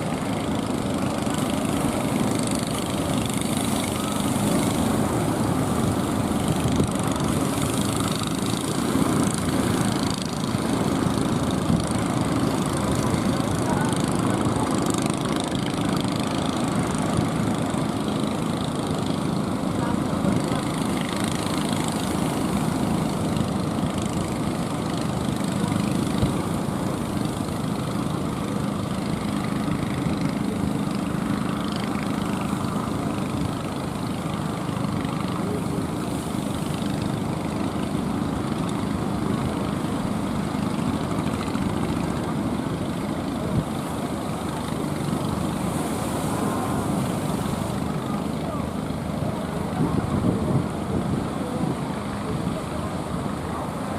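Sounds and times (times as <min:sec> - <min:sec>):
boat motor running: 0:00.0 - 0:53.9.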